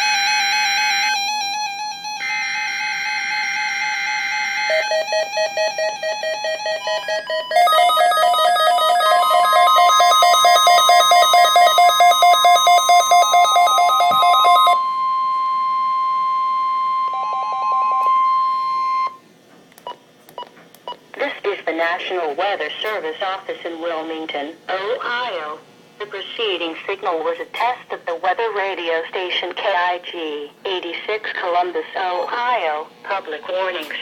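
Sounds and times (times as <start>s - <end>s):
steady warning alarm tone: 0.0s - 19.2s
pulsing electronic alert beeps: 6.9s - 14.8s.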